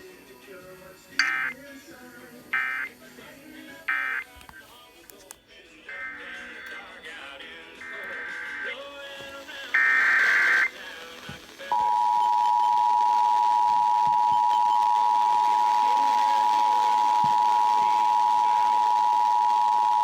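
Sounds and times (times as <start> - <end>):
two-tone attention signal: 1.2 - 1.6
warbling data tones: 9.5 - 10.8.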